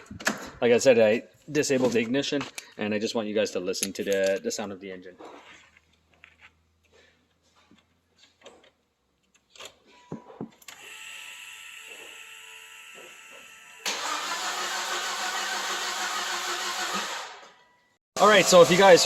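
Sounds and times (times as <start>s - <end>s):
engine cranking without firing: 13.9s - 17.5s.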